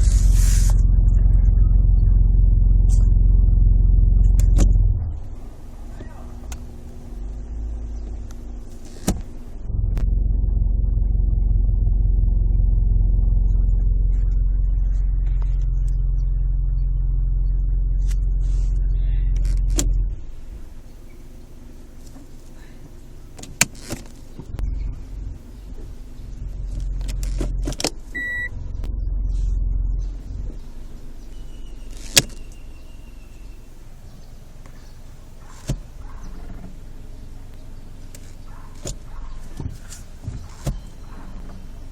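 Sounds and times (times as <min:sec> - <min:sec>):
car grinding drone: 0:00.0 - 0:41.9.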